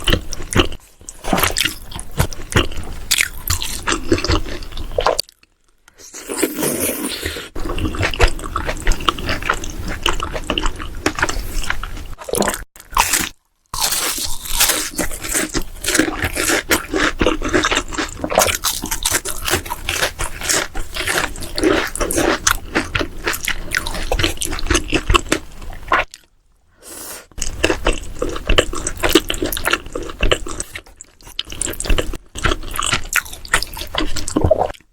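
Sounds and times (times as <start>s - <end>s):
chewing and biting food: 0.0s - 5.5s, 6.1s - 26.3s, 27.4s - 34.9s.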